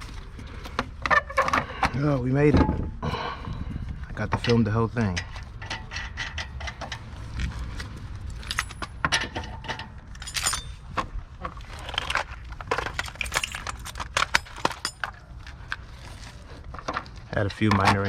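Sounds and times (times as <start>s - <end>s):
low background hum: 0.0s - 18.0s
small metal objects clinking: 11.9s - 15.2s.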